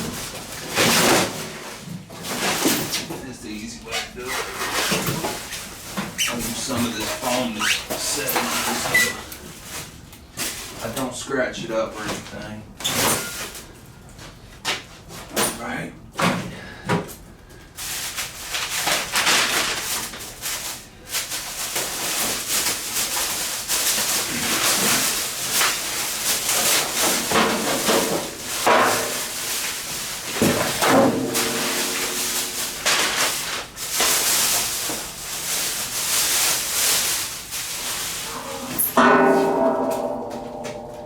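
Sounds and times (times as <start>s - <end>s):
foam squeaking: 3.8s - 9.4s
cardboard rustling and tearing: 4.0s - 10.8s, 17.8s - 38.9s.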